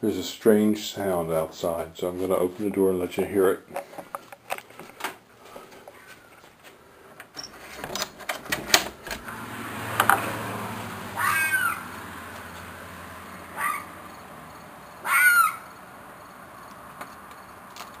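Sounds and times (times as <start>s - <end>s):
night air outside: 0.0s - 18.0s
door unlatching and opening: 7.3s - 9.3s
screeching animal cry: 11.1s - 11.9s, 13.4s - 14.0s, 15.0s - 15.8s.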